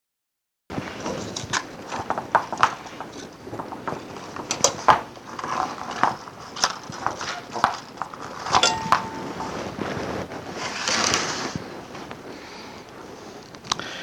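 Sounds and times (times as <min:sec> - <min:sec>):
clicks and knocks of wires: 0:01.0 - 0:09.6.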